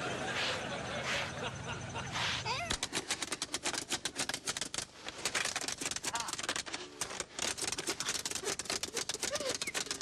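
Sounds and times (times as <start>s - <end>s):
voice: 2.4s - 2.8s
rapid sharp clicks: 2.7s - 10.0s.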